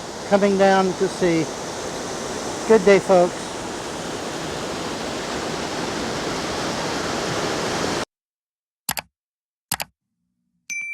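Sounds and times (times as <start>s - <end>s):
brook and waterfalls rushing: 0.0s - 8.0s.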